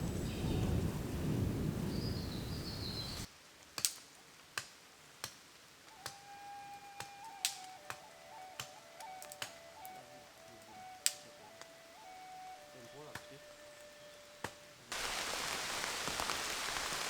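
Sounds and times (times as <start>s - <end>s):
rain: 0.0s - 17.0s
bird chirping: 1.8s - 3.3s.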